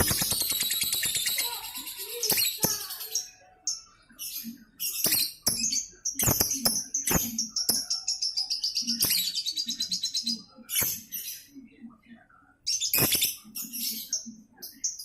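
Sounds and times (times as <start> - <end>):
bird chattering chirps and clicks: 0.0 - 3.8, 5.0 - 8.0, 8.8 - 9.6.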